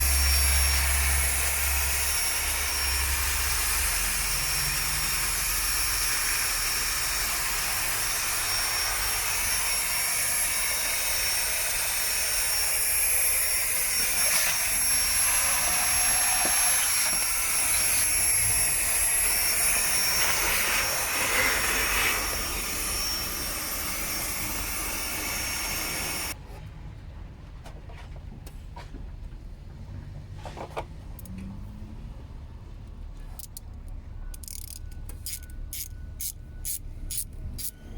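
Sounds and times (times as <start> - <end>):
workshop machine hissing: 0.0 - 26.4.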